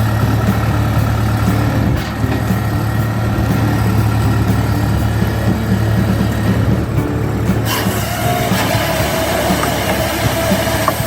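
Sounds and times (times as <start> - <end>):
chainsaw engine running: 0.0 - 11.0.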